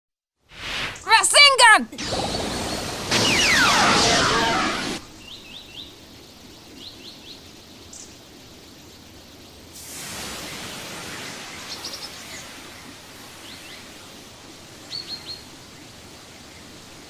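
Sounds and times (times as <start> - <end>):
broad rushing hiss: 0.5 - 17.0
small birds chirping: 2.0 - 9.8, 11.3 - 17.0.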